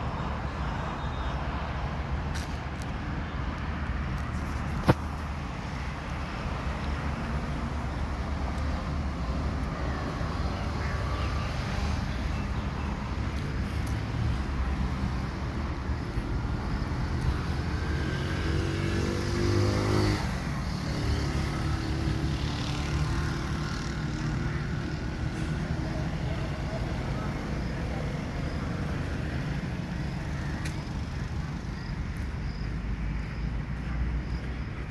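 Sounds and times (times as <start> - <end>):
road traffic rumbling: 0.0 - 34.9
vehicle engine passing: 17.1 - 29.2.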